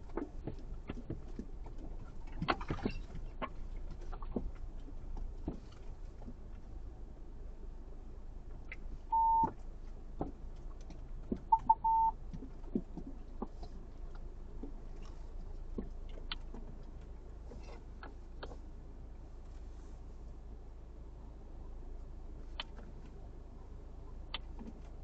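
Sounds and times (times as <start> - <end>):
faint clicks and knocks: 0.0 - 6.7, 8.4 - 18.7, 23.9 - 25.0
electronic beeps: 9.1 - 9.5, 11.5 - 12.2.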